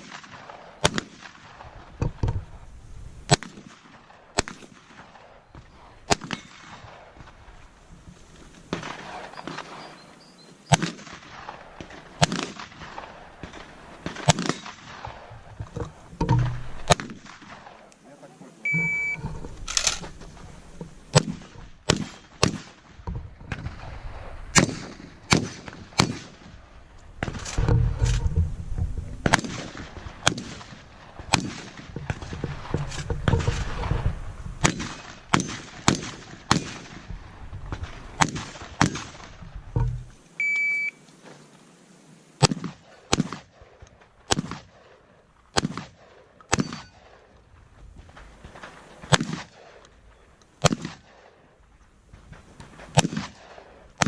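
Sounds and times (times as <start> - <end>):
shotgun shots: 0.0 - 2.0, 3.3 - 7.4, 8.7 - 9.9, 10.7 - 15.6, 16.4 - 17.9, 21.1 - 27.7, 29.2 - 34.0, 34.6 - 40.0, 42.4 - 47.3, 48.5 - 49.8, 50.6 - 51.4, 52.8 - 54.0
shot timer beep: 18.7 - 19.2, 40.4 - 41.0.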